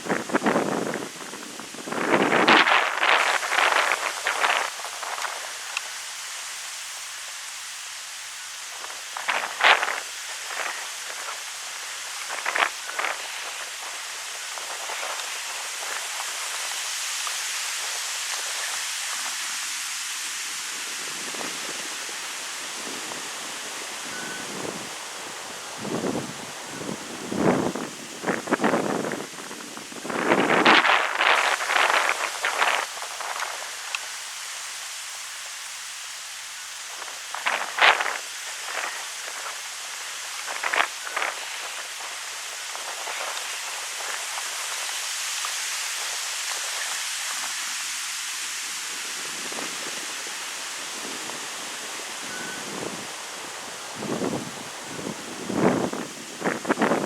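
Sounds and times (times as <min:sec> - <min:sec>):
wind buffeting microphone: 0:00.0 - 0:06.0, 0:08.8 - 0:33.9, 0:48.7 - 0:57.0
leaves rustling: 0:00.0 - 0:57.0.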